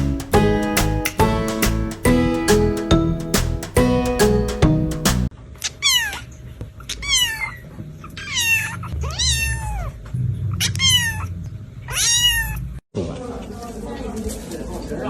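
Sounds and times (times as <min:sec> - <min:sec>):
cat meowing: 0:05.8 - 0:06.3, 0:06.9 - 0:10.0, 0:10.6 - 0:12.8.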